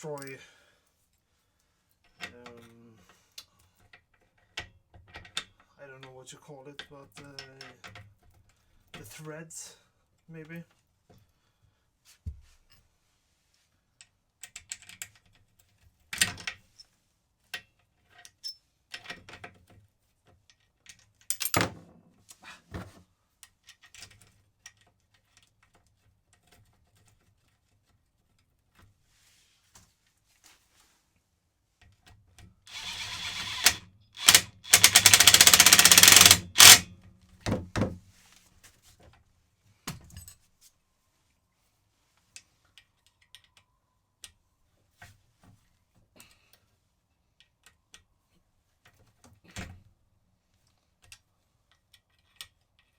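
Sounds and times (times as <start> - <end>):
impact driver hammering: 32.7 - 36.9
metal tools clinking: 33.4 - 36.8.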